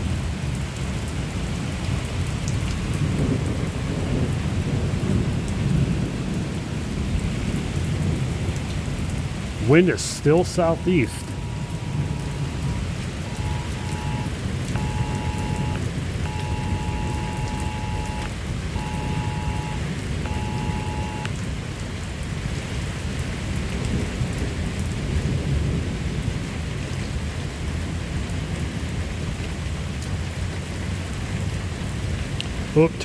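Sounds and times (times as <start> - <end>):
heavy rain: 0.0 - 33.0
two-tone emergency alert beeps: 9.6 - 21.4
thunder rumbling: 10.8 - 21.4.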